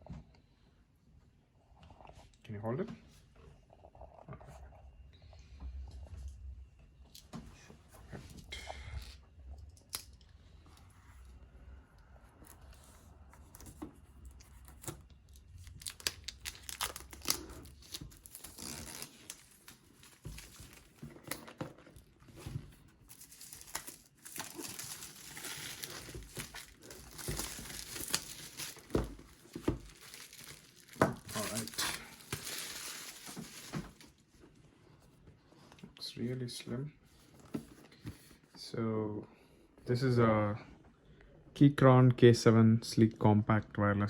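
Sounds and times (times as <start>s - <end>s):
packaging being torn and crinkled: 9.8s - 10.2s, 14.4s - 21.3s, 23.0s - 34.1s.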